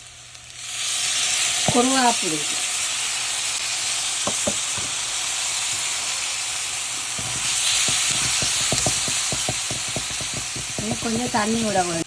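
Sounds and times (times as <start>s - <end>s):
onions sizzling in oil: 0.0s - 12.0s
spoon knocking against pan: 4.2s - 4.9s, 7.2s - 11.5s.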